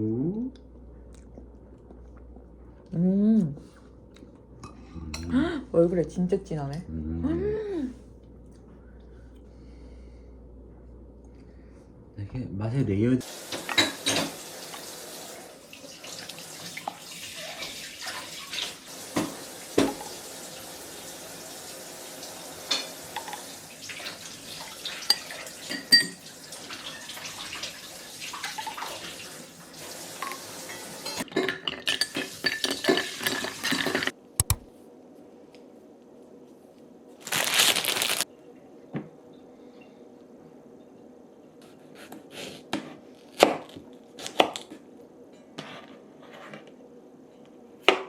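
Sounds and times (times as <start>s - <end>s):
tap water running into sink: 13.2s - 31.2s
dishes and cutlery clinking: 13.5s - 14.4s, 25.0s - 27.3s, 30.2s - 34.6s.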